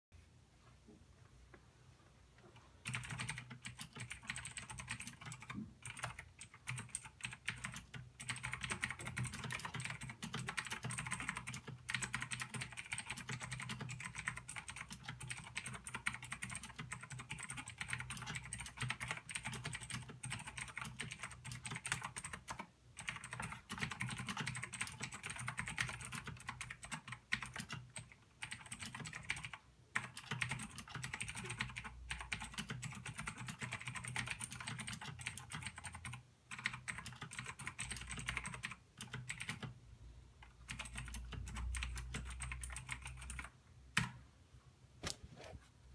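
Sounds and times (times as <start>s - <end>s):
mechanical keyboard typing: 2.8s - 39.8s, 40.4s - 44.2s.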